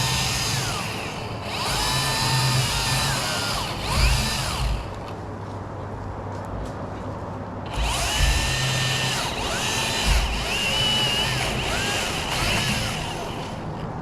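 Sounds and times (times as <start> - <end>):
electric chainsaw revving: 0.0 - 5.0, 7.7 - 13.7.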